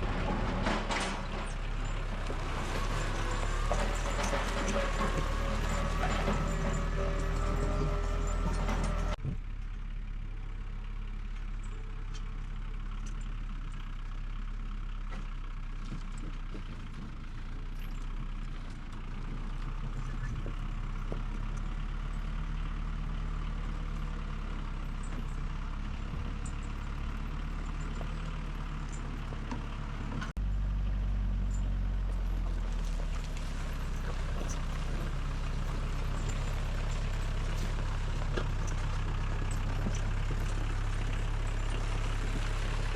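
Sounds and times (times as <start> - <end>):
engine running: 0.0 - 42.9.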